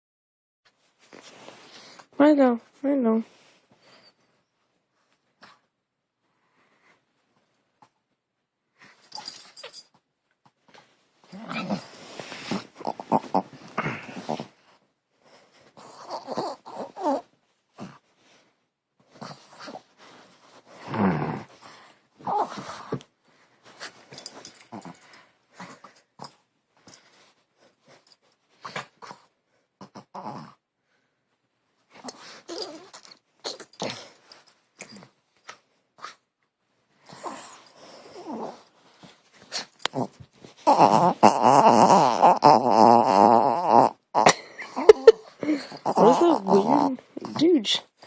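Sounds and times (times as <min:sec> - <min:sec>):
dog making rough noise: 0:11.3 - 0:14.6, 0:15.8 - 0:18.0, 0:39.5 - 0:44.3.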